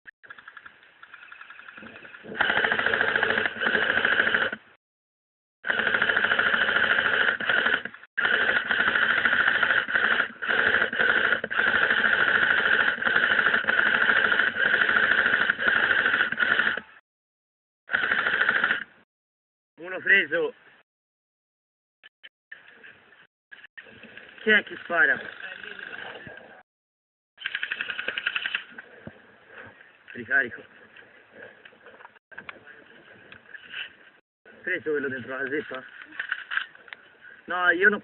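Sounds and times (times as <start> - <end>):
airsoft rifle full-auto bursts: 0.3 - 4.7, 5.6 - 17.0, 17.9 - 19.0, 27.4 - 28.7.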